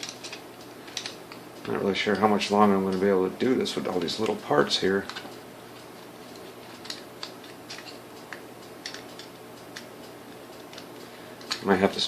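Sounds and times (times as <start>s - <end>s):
steady low hum: 0.0s - 12.0s
light clicks of metal parts: 3.8s - 12.0s.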